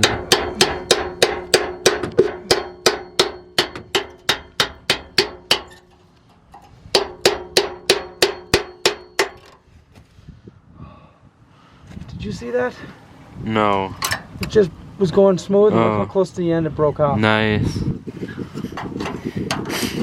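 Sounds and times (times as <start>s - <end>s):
hammer on chisel through metal pipe: 0.0s - 5.8s, 6.9s - 9.4s.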